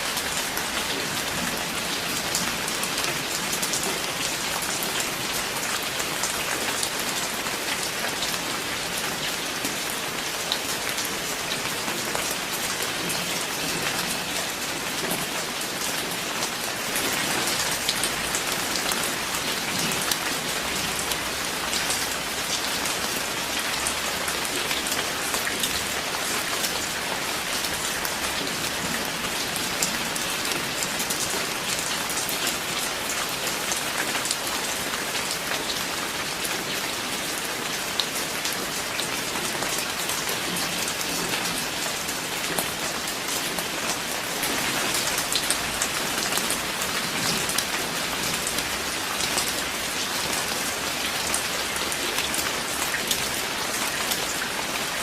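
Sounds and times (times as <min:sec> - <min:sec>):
rain falling: 0:00.0 - 0:55.0.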